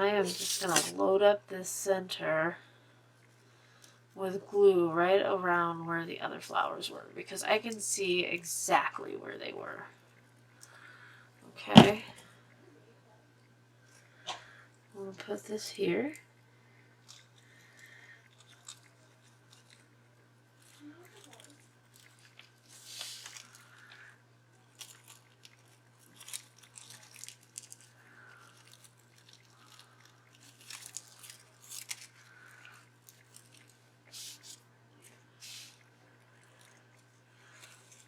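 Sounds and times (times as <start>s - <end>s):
paper crackling and rustling: 0.2s - 0.9s, 28.5s - 32.2s.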